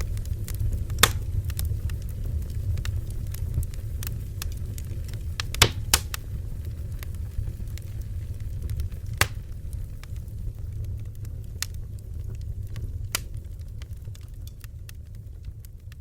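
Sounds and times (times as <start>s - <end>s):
flames rumbling: 0.0s - 16.0s
wood popping in fire: 0.0s - 16.0s.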